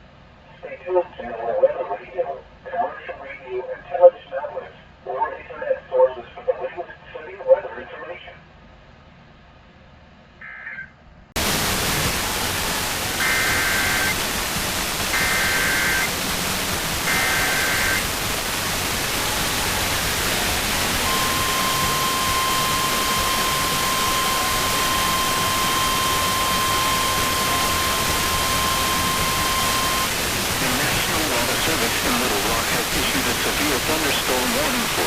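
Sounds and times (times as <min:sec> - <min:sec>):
loud radio hiss: 0:00.4 - 0:08.4, 0:11.4 - 0:35.0
steady warning alarm tone: 0:11.4 - 0:34.0
two-tone data bursts: 0:11.4 - 0:35.0.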